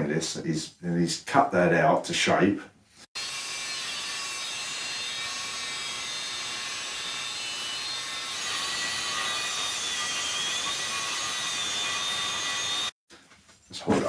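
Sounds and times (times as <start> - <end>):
power tool cutting steel sheet: 3.2 - 13.0.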